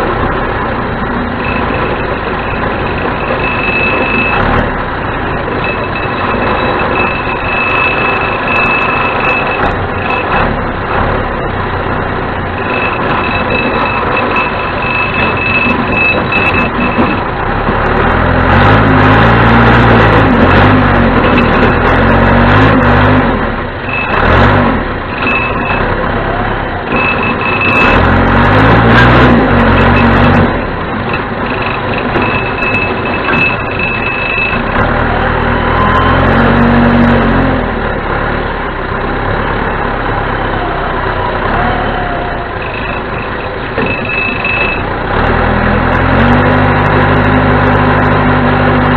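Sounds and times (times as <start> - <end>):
diesel engine working under load: 0.0 - 48.9
backup alarm beeping: 1.2 - 10.7, 12.3 - 17.4, 23.8 - 24.4, 25.1 - 37.0, 40.7 - 45.0.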